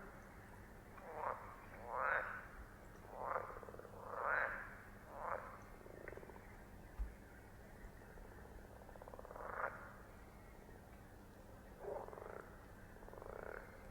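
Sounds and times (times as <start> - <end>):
frogs croaking: 0.0 - 6.7, 7.7 - 10.6, 11.8 - 13.9.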